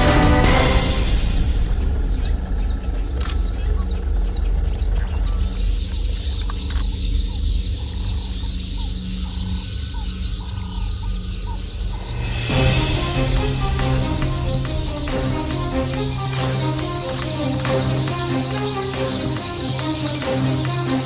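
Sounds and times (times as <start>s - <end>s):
low rumble: 0.0s - 6.3s, 11.7s - 18.5s
birds chirping: 0.0s - 21.0s
repeating lower bird notes: 8.6s - 21.0s.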